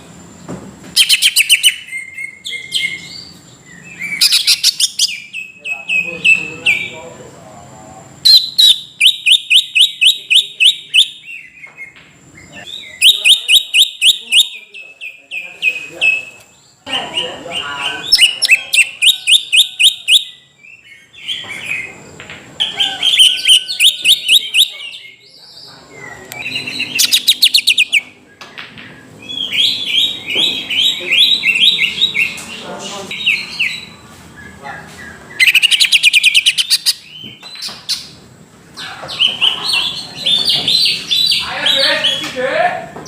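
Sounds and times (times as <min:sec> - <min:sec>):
bird singing whistled notes: 0:01.0 - 0:06.9, 0:08.2 - 0:16.4, 0:18.0 - 0:22.0, 0:22.6 - 0:28.4, 0:35.3 - 0:38.1.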